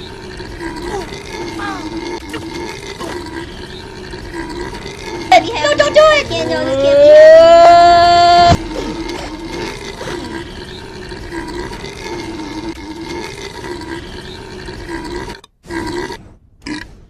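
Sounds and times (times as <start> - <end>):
long belch: 0.0 - 5.3, 8.5 - 16.9
short burps: 0.6 - 5.2, 8.5 - 14.3.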